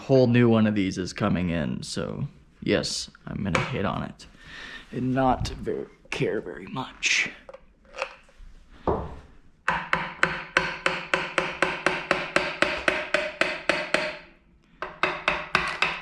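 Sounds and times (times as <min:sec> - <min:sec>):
hammer striking metal: 0:09.7 - 0:16.0.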